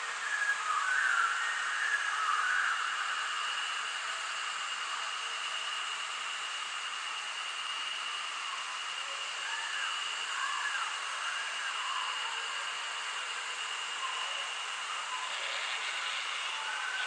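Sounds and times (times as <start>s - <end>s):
high-pitched whine: 0.0s - 17.0s
steady hiss: 10.2s - 17.0s.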